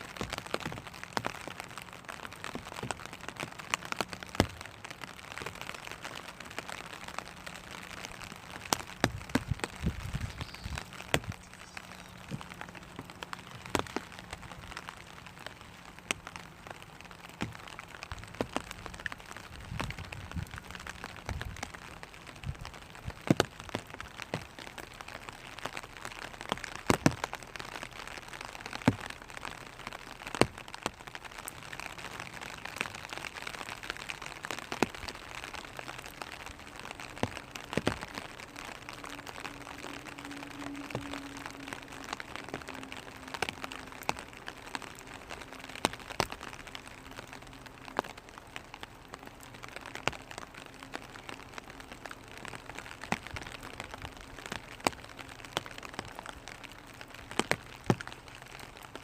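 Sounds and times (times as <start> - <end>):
rain hissing on umbrella: 0.0 - 59.0.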